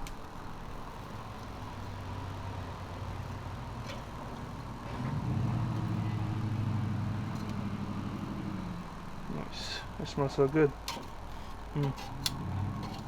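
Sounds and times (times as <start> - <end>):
engine running: 0.0 - 13.0
faint traffic hum: 0.0 - 13.0.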